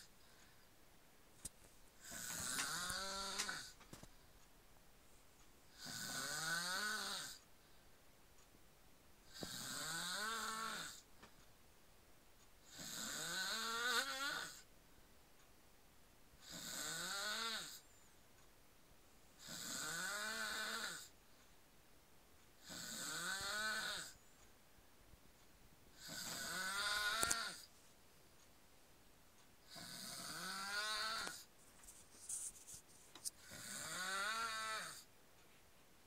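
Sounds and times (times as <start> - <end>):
quiet breaths: 0.0 - 36.0
man snoring: 2.0 - 3.8, 5.7 - 7.4, 9.3 - 11.0, 12.7 - 14.6, 16.4 - 17.8, 19.4 - 21.1, 22.6 - 24.2, 26.0 - 27.7, 29.7 - 31.5, 33.4 - 35.1.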